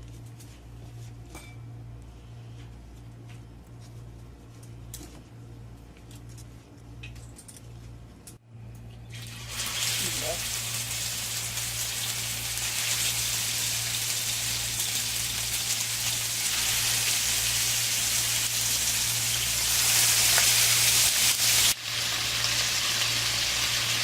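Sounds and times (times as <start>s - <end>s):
meat sizzling in hot oil: 9.1s - 24.0s.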